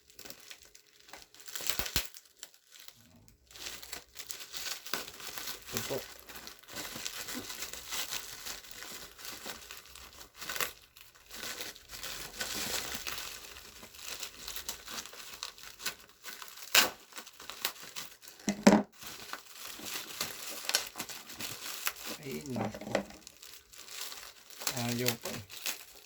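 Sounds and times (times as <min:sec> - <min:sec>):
packaging crinkling and tearing: 0:00.0 - 0:26.0
sharp rips: 0:01.6 - 0:02.2.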